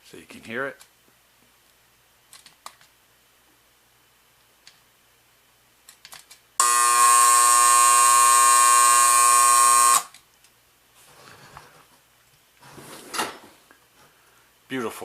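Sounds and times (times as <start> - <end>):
alarm clock electric buzz: 6.6 - 10.1.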